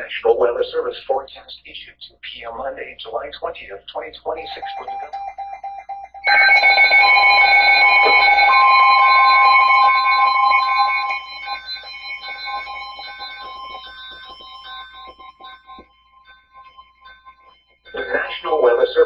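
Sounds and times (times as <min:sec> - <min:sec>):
electronic beep pattern: 0:03.9 - 0:19.0
steady alert tone: 0:04.3 - 0:15.8.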